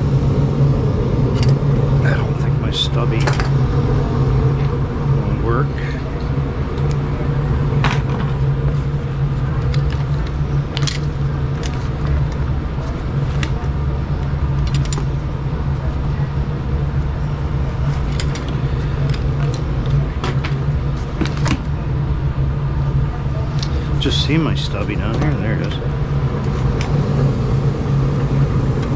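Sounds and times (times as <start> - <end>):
furnace motor humming: 0.0 - 28.9.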